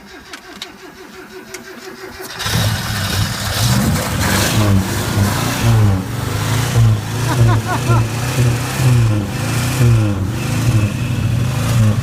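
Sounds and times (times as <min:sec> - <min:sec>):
car engine starter cranking: 0:00.0 - 0:04.8
car engine running unevenly: 0:00.4 - 0:12.0.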